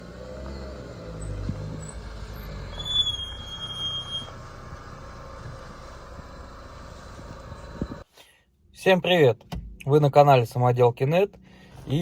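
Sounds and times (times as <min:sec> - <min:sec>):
low car rumble: 0:00.0 - 0:08.1
brake pads squealing: 0:00.3 - 0:08.0.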